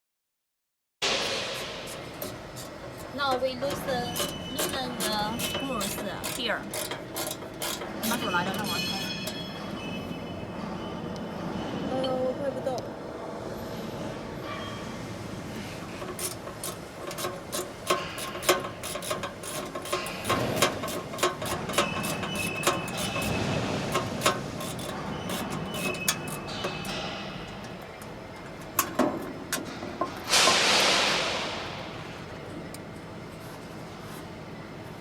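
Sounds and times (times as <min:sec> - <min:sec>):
loud hiss: 0:01.0 - 0:02.8, 0:30.2 - 0:32.2
steel tools clinking on metal: 0:02.2 - 0:10.0, 0:15.9 - 0:29.0.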